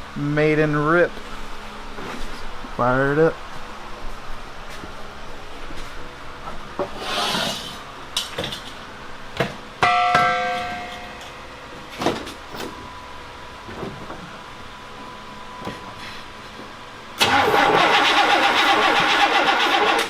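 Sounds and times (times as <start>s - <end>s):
loud metallic clang: 9.8s - 11.4s.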